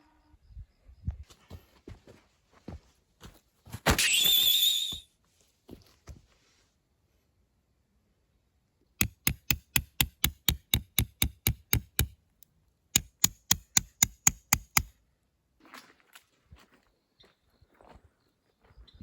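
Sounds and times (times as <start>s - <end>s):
rapid sharp knocking: 9.0s - 12.1s, 13.0s - 14.9s.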